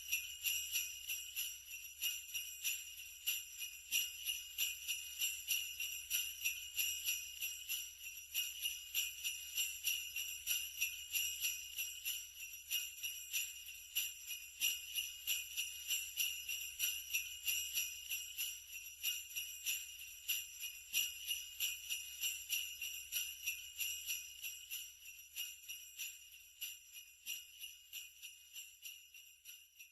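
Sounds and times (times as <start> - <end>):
sleigh bells jingling: 0.0 - 29.9.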